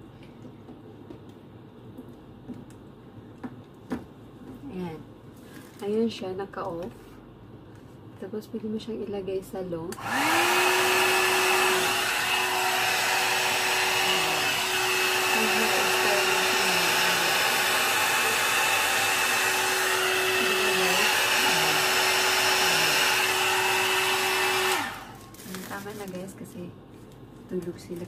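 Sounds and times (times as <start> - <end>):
hair dryer running: 9.9 - 26.2.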